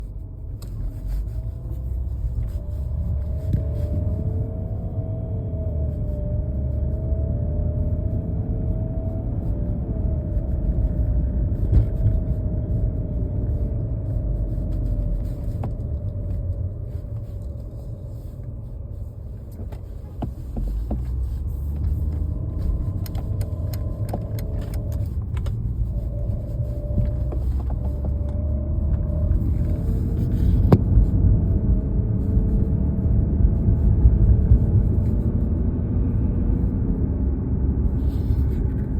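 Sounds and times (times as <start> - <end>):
car cabin low rumble: 0.0 - 38.9.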